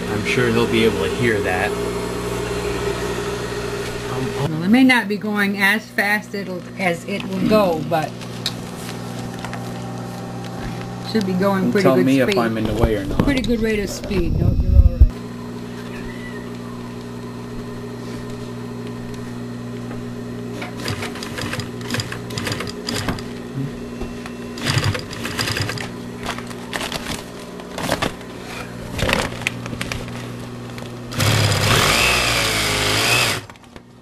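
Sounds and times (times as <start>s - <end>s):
sewing machine motor hum: 15.8s - 33.7s
sewing machine stitching vinyl: 20.6s - 23.3s, 24.6s - 25.9s.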